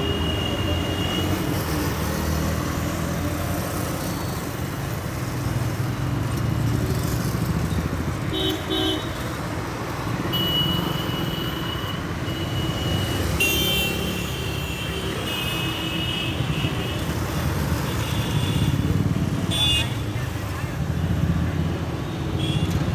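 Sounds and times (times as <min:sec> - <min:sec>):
traffic engines rumbling: 0:00.0 - 0:22.9
vehicle horns honking: 0:08.3 - 0:09.2, 0:10.3 - 0:17.1, 0:17.9 - 0:20.1.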